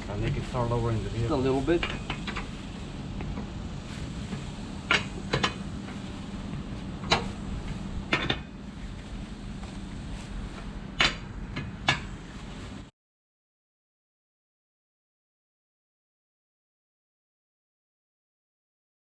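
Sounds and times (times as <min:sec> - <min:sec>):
steady low hum: 0:00.0 - 0:12.9.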